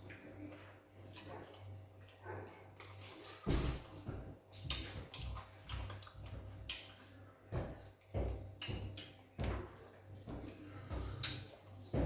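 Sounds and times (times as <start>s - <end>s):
wet chewing: 0.0s - 9.8s, 10.4s - 12.0s
lip smacks: 4.6s - 7.1s, 11.2s - 11.7s.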